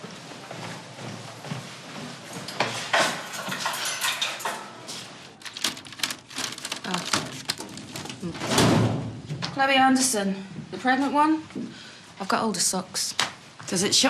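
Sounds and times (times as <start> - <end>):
crockery and cutlery clinking: 2.5 - 5.0.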